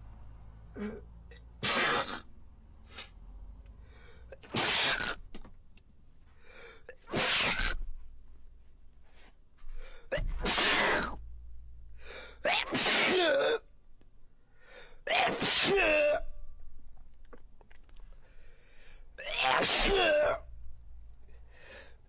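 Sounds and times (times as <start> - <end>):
man sneezing: 1.6 - 2.2, 4.5 - 5.1, 7.1 - 7.8, 10.1 - 11.2, 12.4 - 13.6, 15.1 - 16.2, 19.2 - 20.4.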